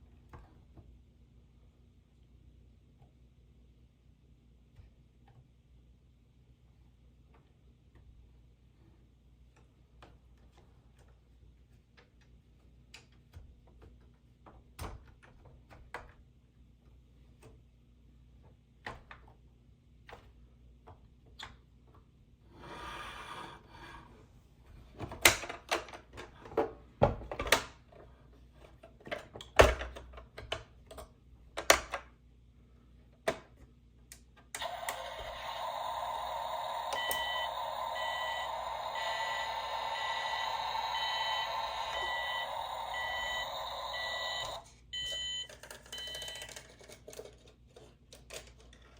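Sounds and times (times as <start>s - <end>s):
short electronic beeps: 36.2s - 45.5s
plastic toys clicking and knocking: 45.0s - 48.9s.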